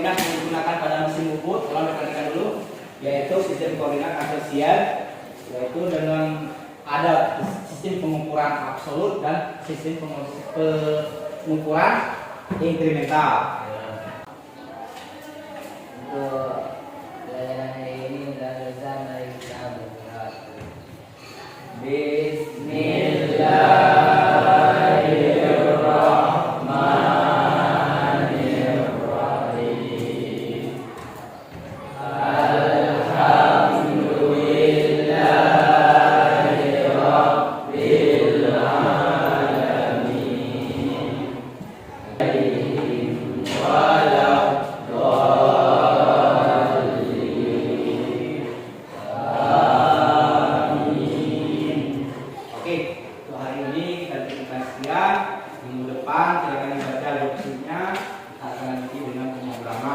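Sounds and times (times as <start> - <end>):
group chanting a prayer: 0.0 - 59.9.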